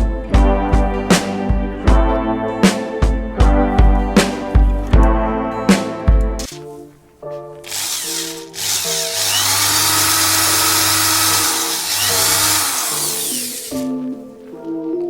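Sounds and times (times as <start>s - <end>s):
background music: 0.0s - 15.0s
power tool running: 7.7s - 13.9s.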